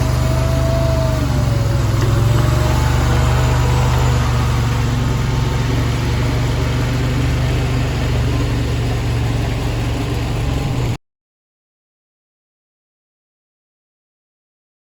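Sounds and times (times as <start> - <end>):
skid steer engine running: 0.0 - 11.0.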